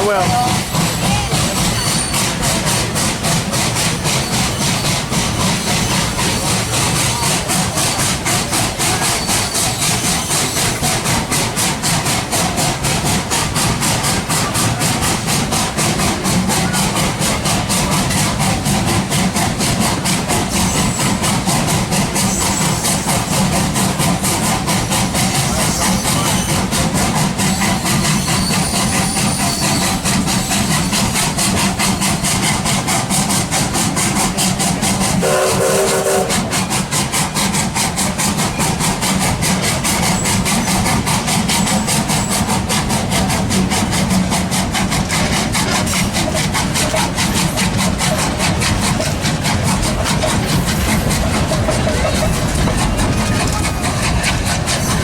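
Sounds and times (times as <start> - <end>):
train rumbling on track: 0.0 - 55.0
train whistle blast: 35.2 - 36.6.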